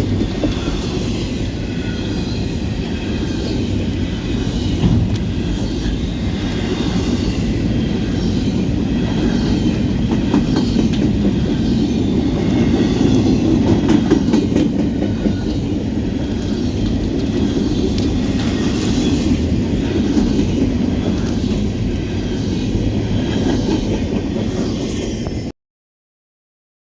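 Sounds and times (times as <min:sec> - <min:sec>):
wheels clicking over rail joints: 0:00.0 - 0:25.0
freight train wheels rumbling: 0:00.0 - 0:25.5.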